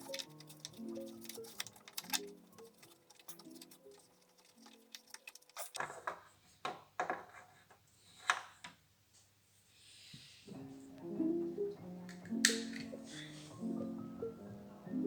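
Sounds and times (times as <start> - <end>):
gentle plucked background music: 0.0 - 4.9, 10.5 - 15.0
plastic clicks and taps: 12.1 - 13.0.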